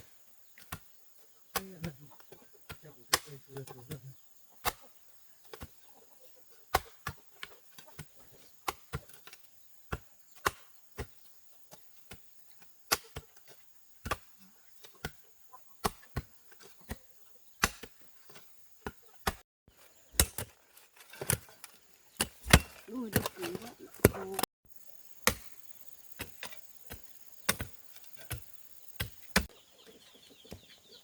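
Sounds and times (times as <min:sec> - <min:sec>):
chopping wood: 0:00.6 - 0:00.9, 0:01.5 - 0:05.9, 0:06.7 - 0:12.3, 0:12.9 - 0:15.2, 0:15.8 - 0:19.4, 0:20.1 - 0:24.5, 0:25.2 - 0:25.6, 0:26.2 - 0:29.5.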